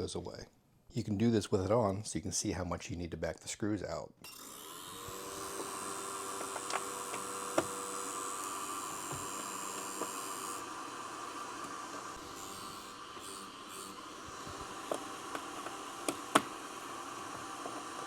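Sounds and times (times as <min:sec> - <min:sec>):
cooling fans humming: 0:05.4 - 0:18.0.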